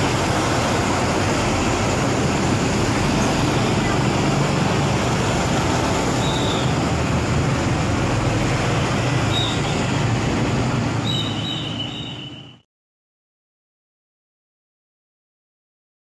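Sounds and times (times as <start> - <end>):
diesel bus engine rumbling: 0.0 - 12.4
road traffic noise: 0.0 - 12.7.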